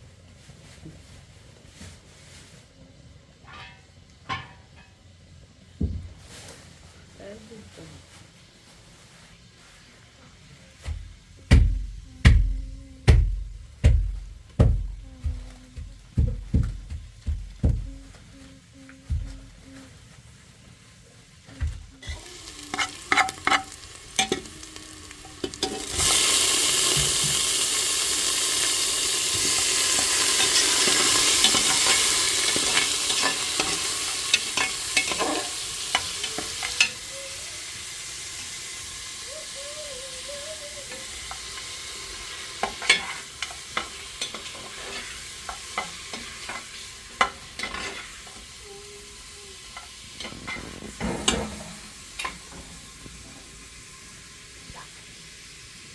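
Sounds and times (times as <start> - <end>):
food sizzling loudly: 20.9 - 55.9.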